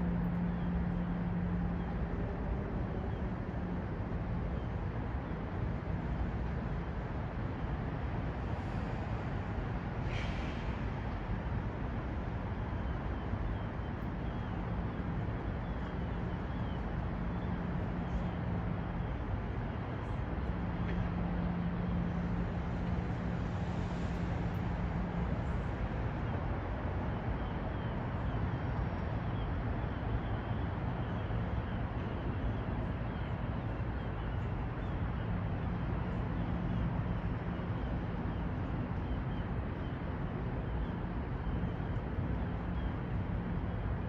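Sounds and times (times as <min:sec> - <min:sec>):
low steady hum: 0:00.0 - 0:09.0
city traffic rumble: 0:00.0 - 0:44.0.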